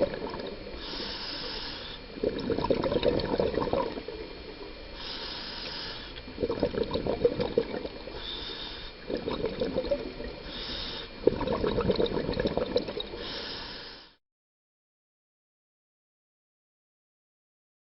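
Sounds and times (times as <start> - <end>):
exhaled bubbles rushing: 0.0 - 0.8, 2.1 - 4.9, 6.2 - 8.2, 9.0 - 10.5, 11.2 - 13.2
regulator inhale hiss: 0.6 - 2.2, 4.7 - 6.4, 8.1 - 9.2, 10.4 - 11.2, 13.0 - 14.2.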